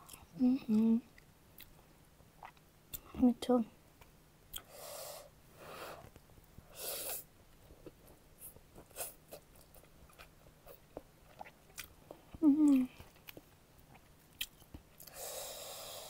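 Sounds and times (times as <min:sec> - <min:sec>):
mouth chewing noodles: 0:02.4 - 0:03.1, 0:06.7 - 0:16.0
noisy breath: 0:04.6 - 0:07.3, 0:15.1 - 0:16.0
person humming mmm: 0:12.4 - 0:13.0.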